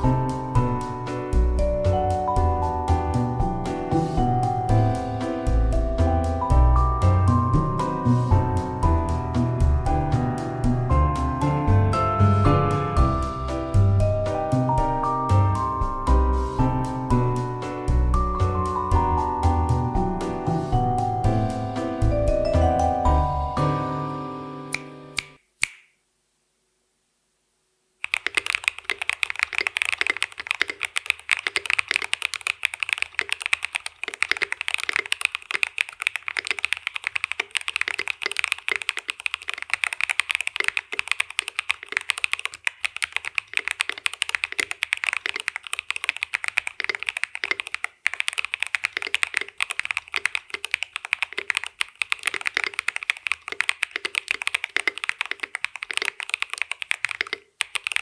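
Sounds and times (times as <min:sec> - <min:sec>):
mechanical keyboard typing: 0:28.0 - 0:58.0.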